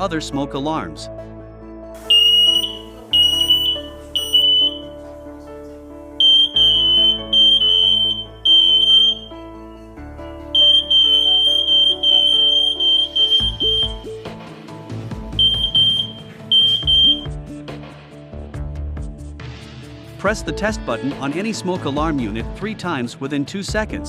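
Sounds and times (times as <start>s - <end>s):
background music: 0.0s - 24.0s
smoke alarm beeping: 2.1s - 5.0s, 6.2s - 9.4s, 10.5s - 14.2s, 15.4s - 17.3s.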